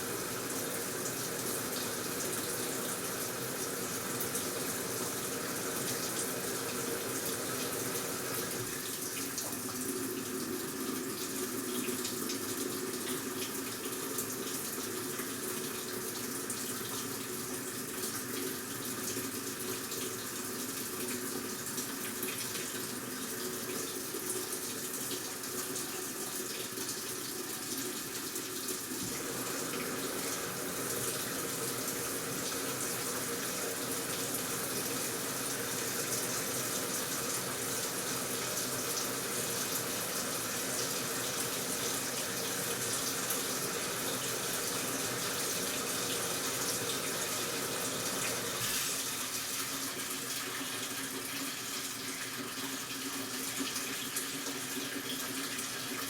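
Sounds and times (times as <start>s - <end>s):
water running into washing machine: 0.0s - 56.0s.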